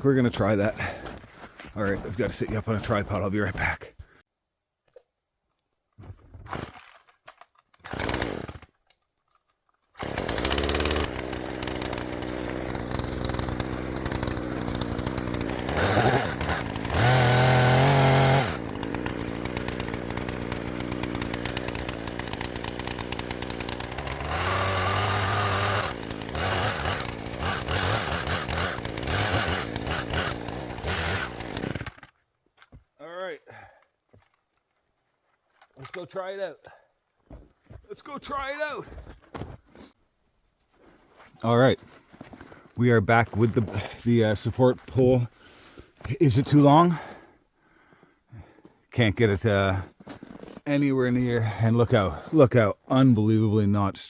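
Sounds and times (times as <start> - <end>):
chainsaw revving and cutting: 7.9 - 8.6, 10.0 - 32.1.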